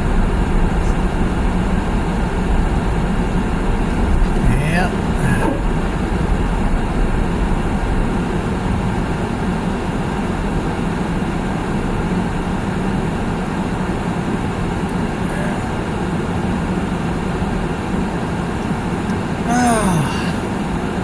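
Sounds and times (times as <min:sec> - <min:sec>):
car road noise: 0:00.0 - 0:09.2, 0:13.6 - 0:21.0.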